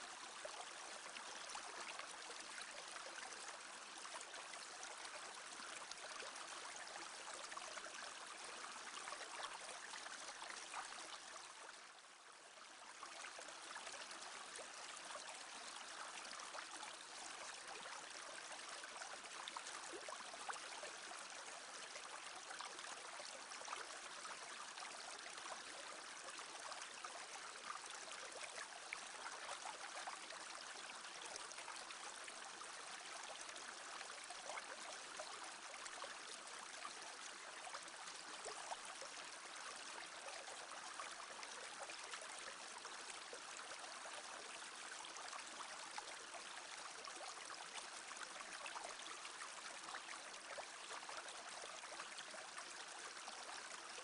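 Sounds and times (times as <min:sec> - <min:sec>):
brook babbling over stones: 0:00.0 - 0:54.0.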